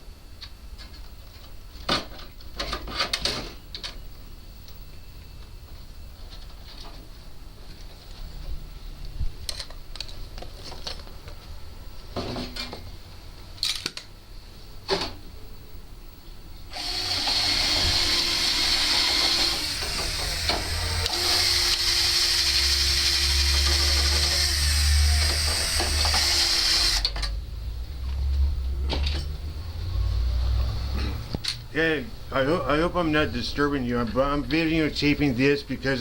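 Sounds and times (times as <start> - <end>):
power drill drilling into door: 16.7 - 27.1.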